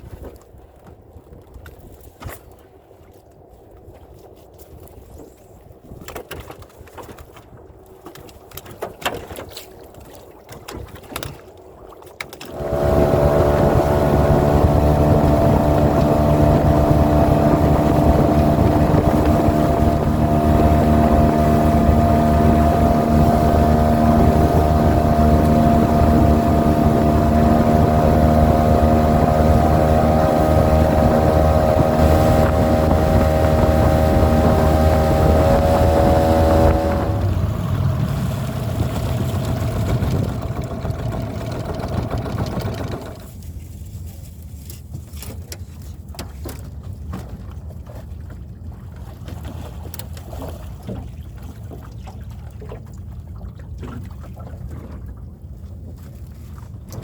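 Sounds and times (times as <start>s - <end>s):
small boat motor running: 12.4s - 43.5s.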